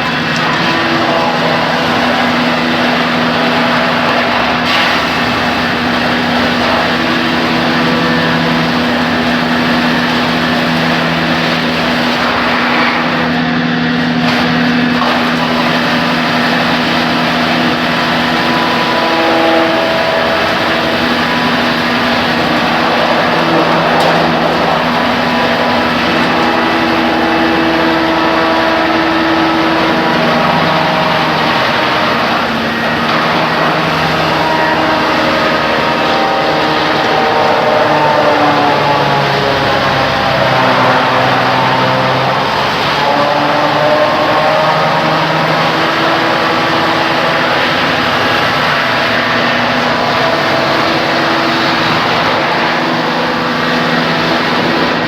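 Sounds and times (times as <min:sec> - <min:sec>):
sawdust machine running: 0:00.0 - 0:55.0.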